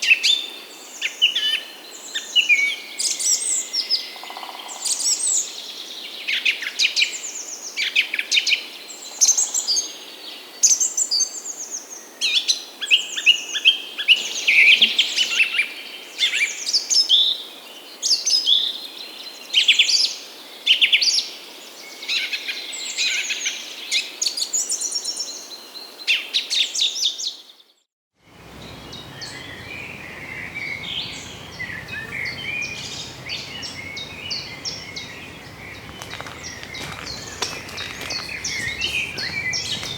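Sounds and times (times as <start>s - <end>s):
birds singing: 28.4s - 39.9s
low background hum: 28.4s - 39.9s.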